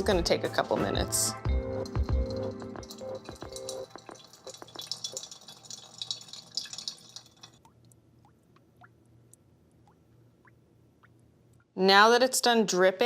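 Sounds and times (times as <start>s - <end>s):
coffee dripping into decanter: 1.9s - 8.7s.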